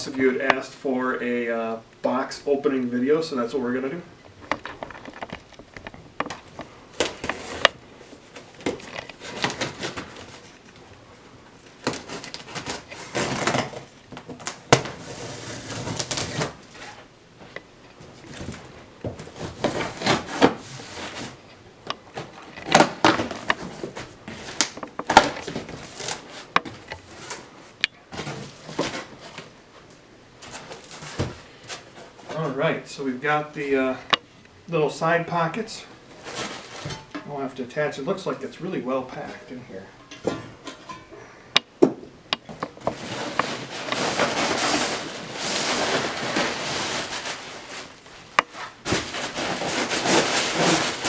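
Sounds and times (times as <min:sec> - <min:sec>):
cardboard box rustling and scraping: 0:11.8 - 0:17.1, 0:18.0 - 0:29.6, 0:30.4 - 0:32.3, 0:36.1 - 0:37.0, 0:42.6 - 0:51.0
sharp knocks and clicks: 0:26.5 - 0:27.0, 0:40.0 - 0:43.5.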